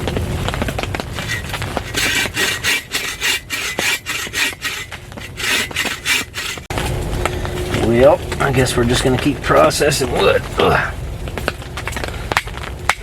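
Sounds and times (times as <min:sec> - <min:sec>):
hand saw cutting wood: 0:01.2 - 0:06.7.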